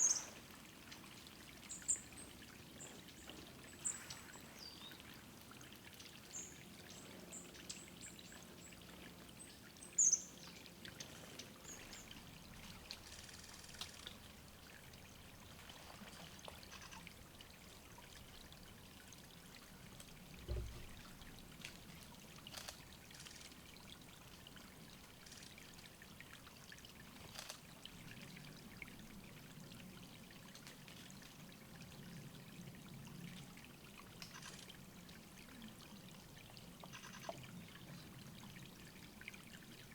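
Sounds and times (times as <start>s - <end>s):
water trickling into pool: 0.0s - 39.9s
dull low thump: 20.4s - 21.0s.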